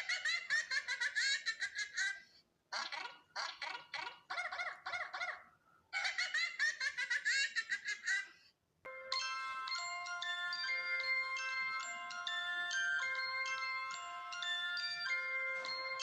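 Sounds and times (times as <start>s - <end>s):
glockenspiel-like chime music: 8.9s - 16.0s.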